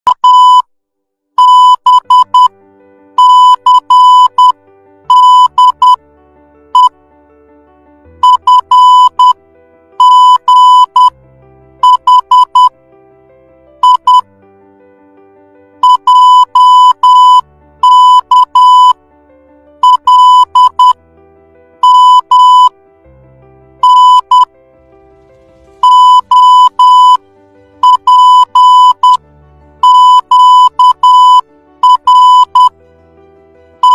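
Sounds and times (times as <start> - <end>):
morse code beeps: 0.1 - 0.6, 1.4 - 2.5, 3.2 - 6.0, 6.7 - 6.9, 8.2 - 9.4, 10.0 - 11.2, 11.8 - 12.7, 13.8 - 14.3, 15.8 - 19.0, 19.8 - 21.0, 21.8 - 22.7, 23.8 - 24.5, 25.8 - 27.2, 27.8 - 29.2, 29.8 - 32.7
quiet background music: 1.4 - 33.9.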